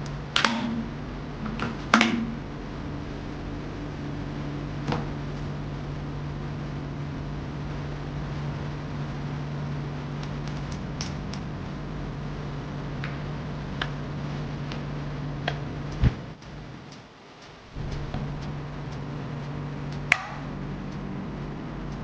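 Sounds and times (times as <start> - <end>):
steady low hum: 0.0 - 22.0
light clicks and ticks: 20.9 - 21.1.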